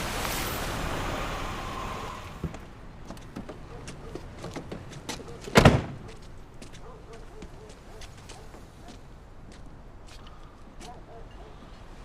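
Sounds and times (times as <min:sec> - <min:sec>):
vehicle passing: 0:00.0 - 0:06.5
light knocks like footsteps: 0:02.4 - 0:11.3
loud thump: 0:05.5 - 0:06.2.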